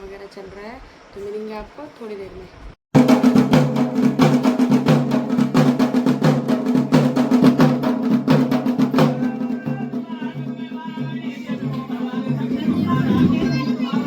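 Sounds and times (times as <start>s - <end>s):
drums beaten in fast rhythm: 2.9s - 14.0s
wavering higher melody: 11.9s - 14.0s.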